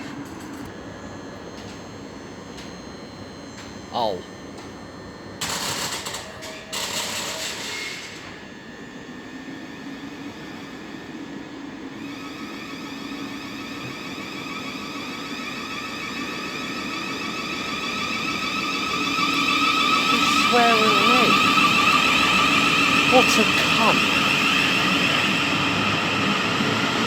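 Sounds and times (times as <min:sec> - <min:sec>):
electric train motors whining: 0:04.6 - 0:27.0.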